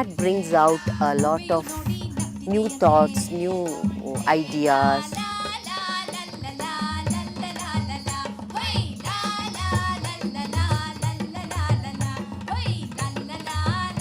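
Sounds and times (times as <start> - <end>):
low drum beat: 0.0 - 5.2
person singing a melody: 0.0 - 6.2.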